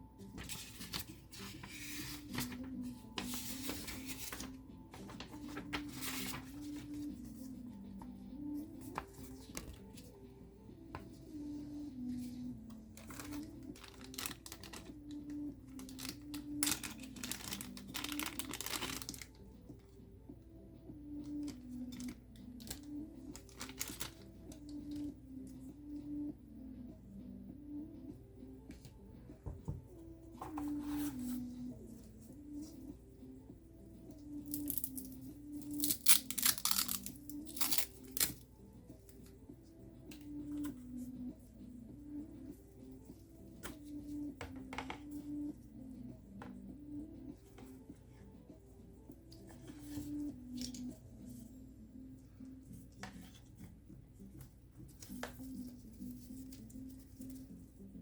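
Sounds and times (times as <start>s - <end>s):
soft background music: 0.0s - 58.0s
packaging torn and crumpled: 13.0s - 14.9s, 15.8s - 19.3s, 35.8s - 38.3s.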